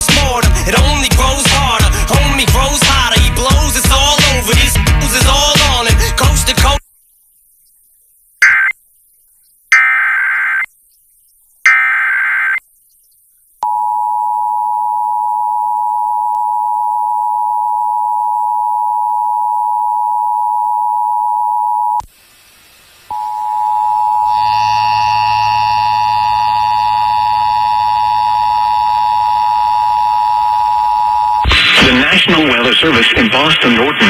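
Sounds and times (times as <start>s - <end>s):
screeching digital data bursts: 8.4s - 8.8s, 9.7s - 10.7s, 11.6s - 12.6s, 23.1s - 28.5s
two-tone alert signal: 8.4s - 8.8s, 9.7s - 10.7s, 11.7s - 12.6s.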